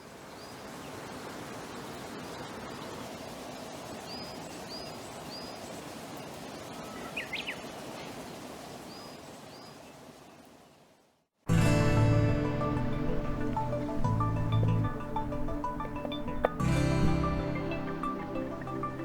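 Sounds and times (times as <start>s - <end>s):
steady outdoor hiss: 0.0s - 19.0s
bird calling: 6.6s - 8.2s.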